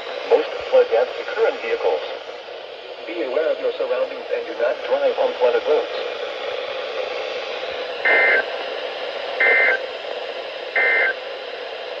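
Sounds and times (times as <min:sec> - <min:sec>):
radio hiss: 0:00.0 - 0:12.0
two-tone digital data bursts: 0:08.1 - 0:08.4, 0:09.4 - 0:09.8, 0:10.8 - 0:11.2.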